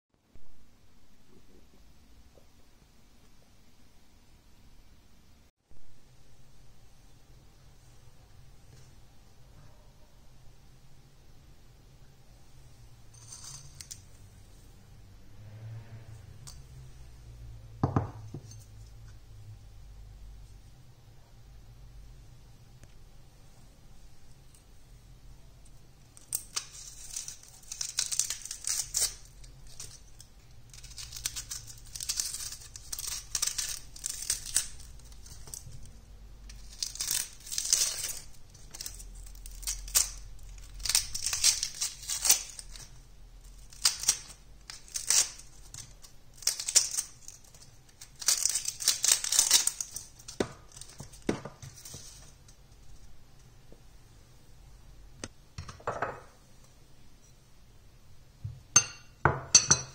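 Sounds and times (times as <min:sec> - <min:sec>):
onion skin being peeled: 0:25.4 - 0:53.2.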